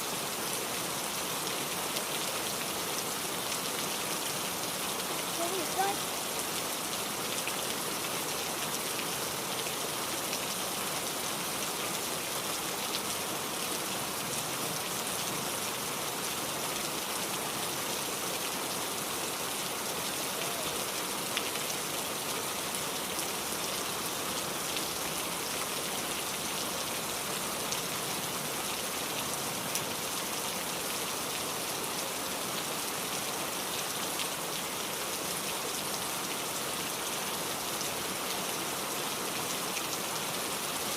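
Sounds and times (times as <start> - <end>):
heavy rain hissing: 1.8 - 8.6, 9.2 - 26.0.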